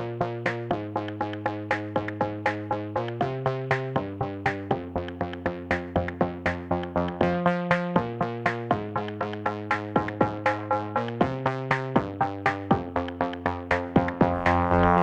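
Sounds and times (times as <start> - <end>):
plucked synthesizer notes: 0.0 - 15.0
sustained synth chords: 4.2 - 15.0.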